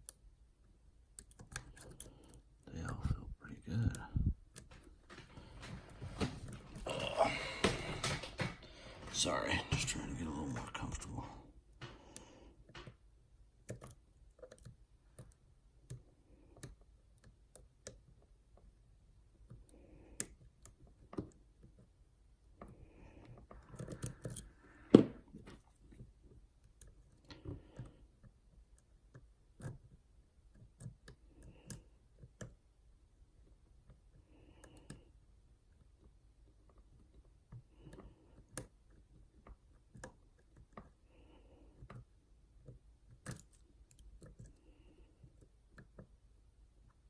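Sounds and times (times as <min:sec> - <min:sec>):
lock picks clicking and scraping: 0:01.1 - 0:02.6, 0:13.6 - 0:18.2, 0:22.6 - 0:24.8, 0:41.7 - 0:46.2.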